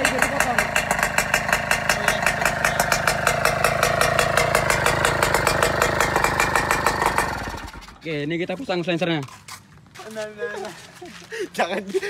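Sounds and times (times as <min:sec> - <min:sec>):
two-stroke engine crackling: 0:00.0 - 0:08.7.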